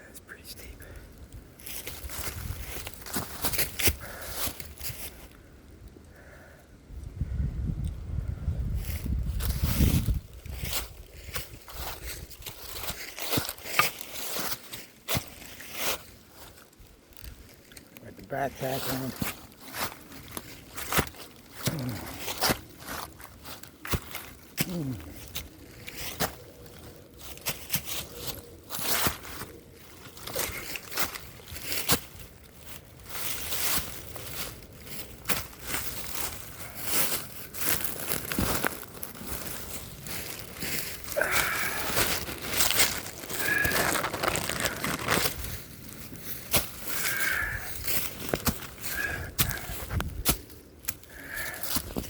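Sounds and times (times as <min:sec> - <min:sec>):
footsteps through leaf litter: 0:01.6 - 0:05.4, 0:08.8 - 0:52.0
rustling and clicks of gear: 0:10.4 - 0:18.1, 0:18.9 - 0:52.0
twigs snapping: 0:10.7 - 0:18.0, 0:19.1 - 0:52.0.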